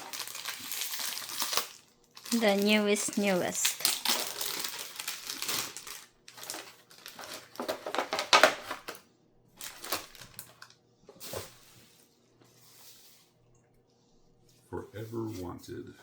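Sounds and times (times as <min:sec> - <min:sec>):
packaging crinkling and rustling: 0:00.0 - 0:09.0, 0:09.6 - 0:12.1.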